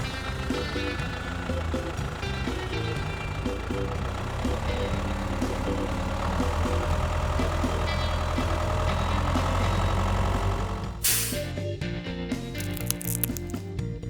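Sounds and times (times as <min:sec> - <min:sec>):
heavy vehicle engine rumbling: 0:00.0 - 0:11.6
short loud hiss: 0:11.0 - 0:11.5.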